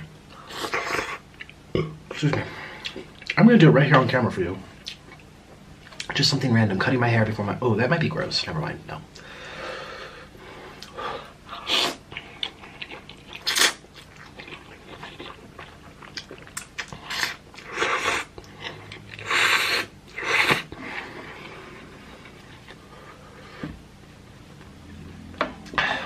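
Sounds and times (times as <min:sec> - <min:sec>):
person chewing and slurping noodles: 0:10.8 - 0:23.5.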